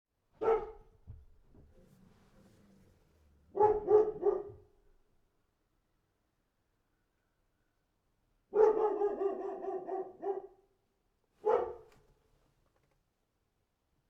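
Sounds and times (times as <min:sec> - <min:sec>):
dog barking: 0:00.4 - 0:01.0, 0:03.5 - 0:04.8, 0:08.5 - 0:10.6, 0:11.4 - 0:12.0.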